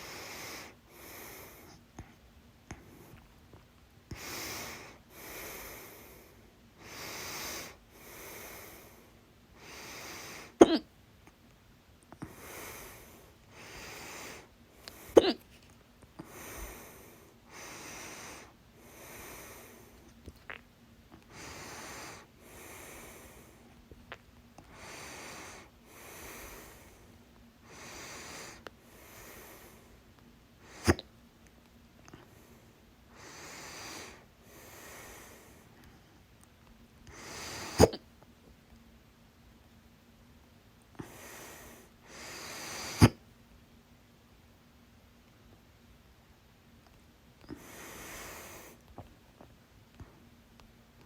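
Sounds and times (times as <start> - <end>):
woman breathing: 0.0 - 3.2, 4.1 - 10.6, 12.2 - 15.3, 16.2 - 20.1, 21.2 - 23.8, 24.6 - 30.0, 32.1 - 36.2, 41.0 - 43.2, 47.4 - 48.8
woman hiccuping: 10.6 - 10.9, 15.2 - 15.4.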